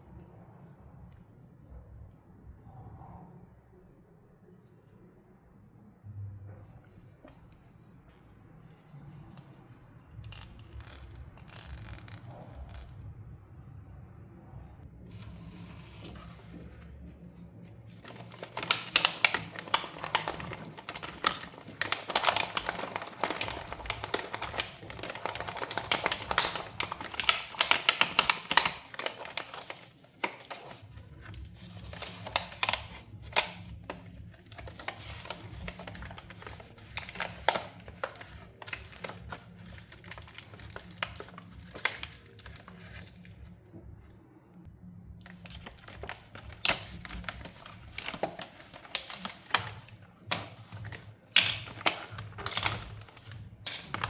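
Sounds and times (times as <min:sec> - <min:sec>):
plastic packaging crinkling: 0:17.9 - 0:43.5, 0:45.2 - 0:54.0.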